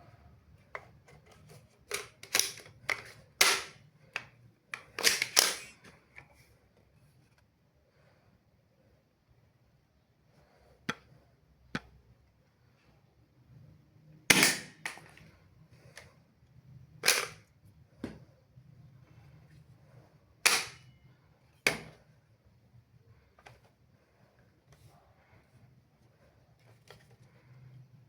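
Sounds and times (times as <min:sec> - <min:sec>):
toy gun clicks: 0:05.0 - 0:05.8.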